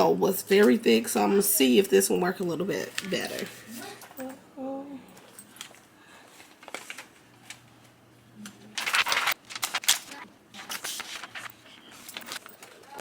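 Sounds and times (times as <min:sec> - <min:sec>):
plastic pouches rustling: 0:05.6 - 0:07.6, 0:08.8 - 0:13.0.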